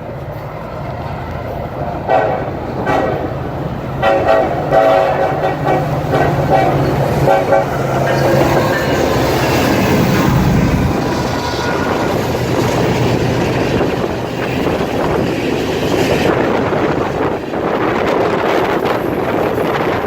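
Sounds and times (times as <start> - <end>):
train rumble and clatter: 0.0 - 20.0
locomotive engine running: 0.1 - 19.7
locomotive horn blasts: 2.1 - 3.3, 4.0 - 9.3.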